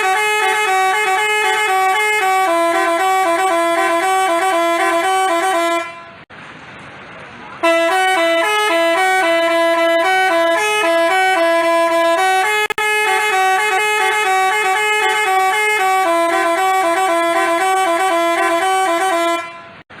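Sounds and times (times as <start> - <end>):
multi-tone bus horn melody: 0.0 - 6.3, 7.6 - 20.0.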